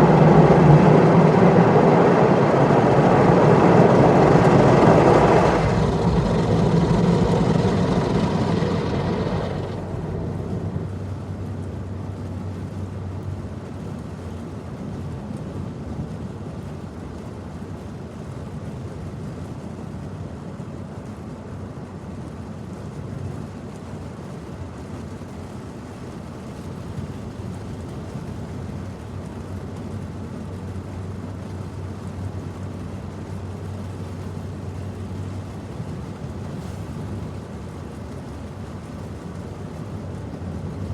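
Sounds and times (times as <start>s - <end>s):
steady low hum: 0.0s - 13.4s
car wash machinery rushing: 0.0s - 14.4s, 24.6s - 40.9s.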